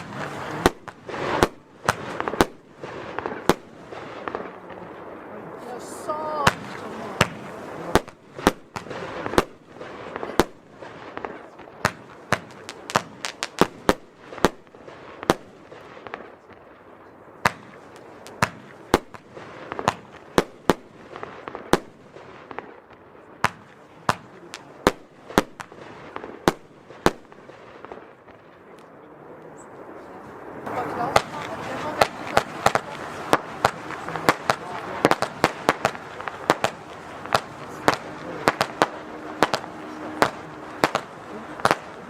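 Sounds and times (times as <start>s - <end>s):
firework hiss: 0.0s - 4.6s, 30.7s - 42.0s
firework bangs: 0.0s - 42.0s.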